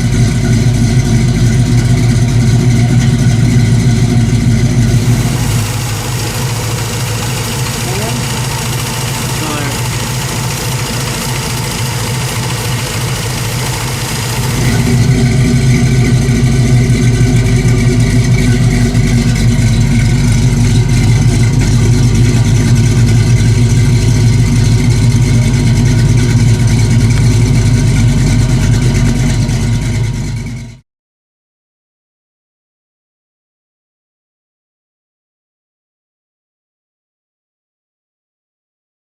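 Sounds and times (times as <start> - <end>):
v eight engine lopey idle: 0.0 - 30.8.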